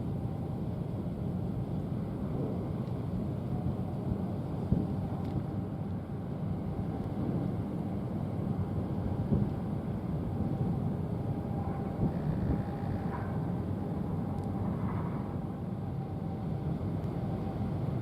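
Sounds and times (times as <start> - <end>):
wind buffeting microphone: 6.4 - 15.6.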